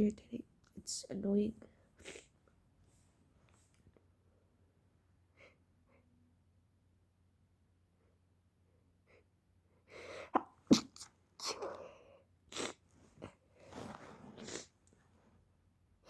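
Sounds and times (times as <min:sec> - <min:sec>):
person sneezing: 0:10.2 - 0:11.8.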